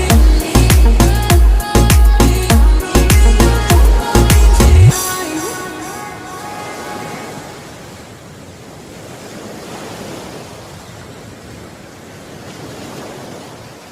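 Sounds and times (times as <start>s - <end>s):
waves breaking on beach: 4.0s - 13.9s.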